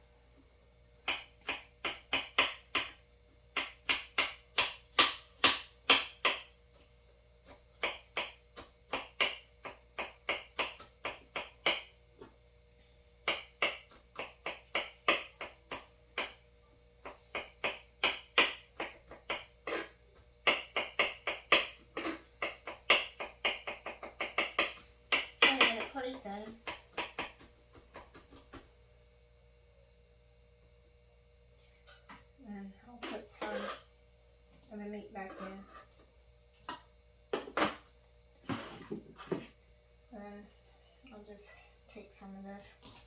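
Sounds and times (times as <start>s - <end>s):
knife chopping zucchini: 7.4s - 11.9s, 17.0s - 28.7s.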